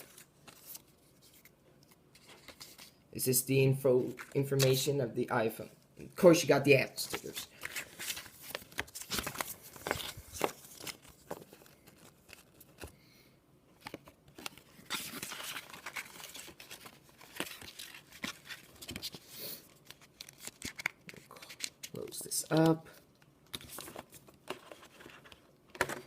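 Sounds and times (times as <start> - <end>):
paper packaging rustling: 7.0 - 12.9, 13.7 - 22.8, 23.5 - 26.0.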